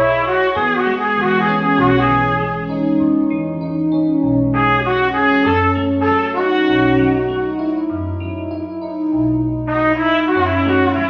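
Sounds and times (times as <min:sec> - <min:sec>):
cornet playing: 0:00.0 - 0:03.0, 0:04.6 - 0:08.2, 0:09.7 - 0:11.0
instrumental backing music: 0:00.0 - 0:11.0.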